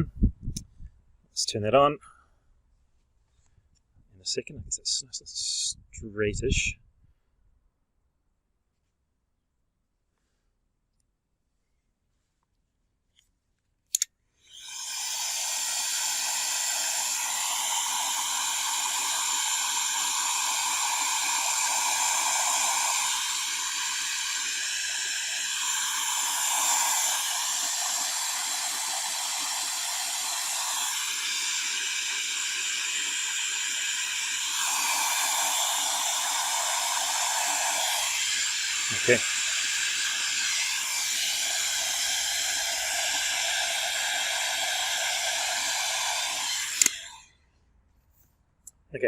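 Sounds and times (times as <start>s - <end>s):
heat gun blowing hiss: 13.9s - 47.3s
heat gun switch click: 46.7s - 47.1s.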